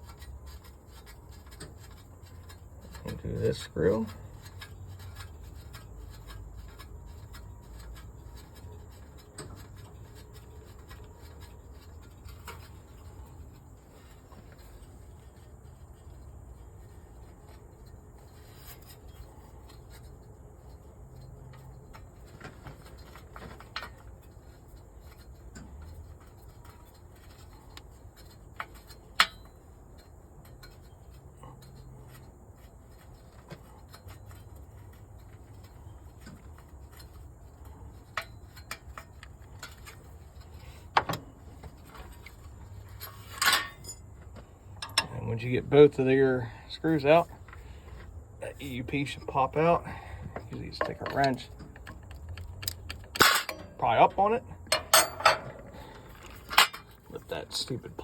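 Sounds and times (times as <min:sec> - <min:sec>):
metal tools clicking and rubbing: 0:00.0 - 0:44.1, 0:44.7 - 0:45.5, 0:50.5 - 0:58.0
sharp metal clink: 0:54.7 - 0:55.6.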